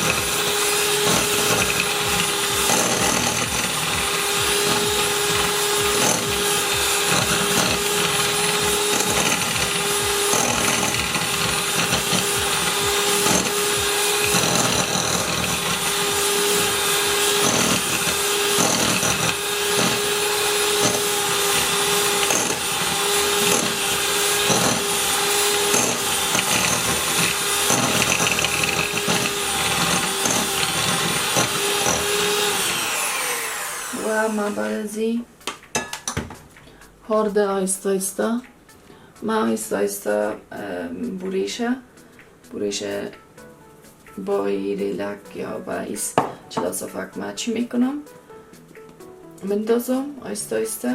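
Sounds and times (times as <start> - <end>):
electric hand mixer running: 0.0 - 34.9.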